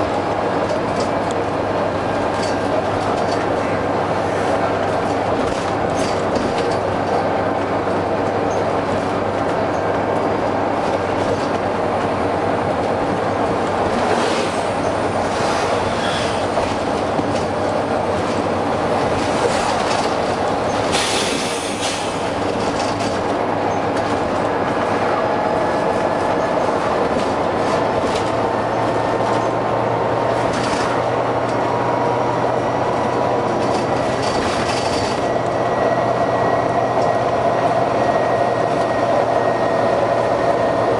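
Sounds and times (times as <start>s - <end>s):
bus diesel engine running: 0.0s - 40.9s
air hiss bursts: 20.9s - 22.2s.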